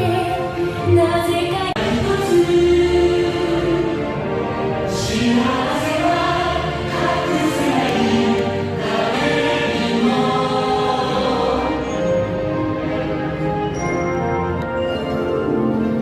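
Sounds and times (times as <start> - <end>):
choir singing held notes: 1.8 - 13.6.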